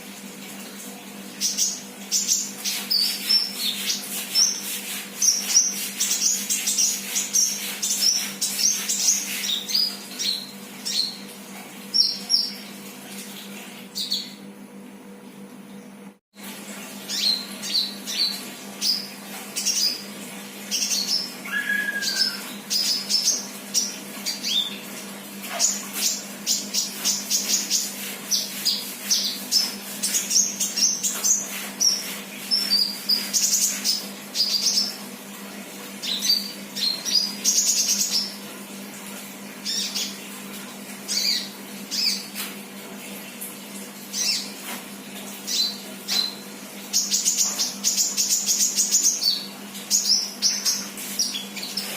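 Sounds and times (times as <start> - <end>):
young bird chirping and twittering: 20.8 - 23.2.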